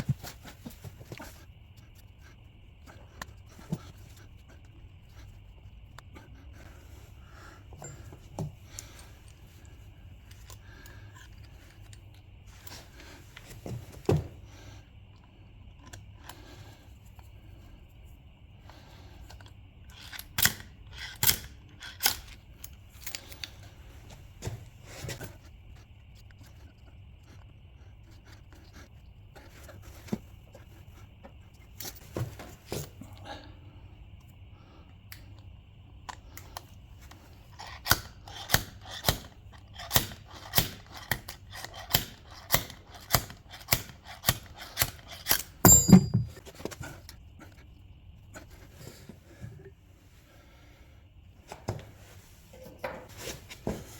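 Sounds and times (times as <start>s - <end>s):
faint steady hum: 0.0s - 53.9s
hand tools clicking on metal: 37.6s - 46.1s.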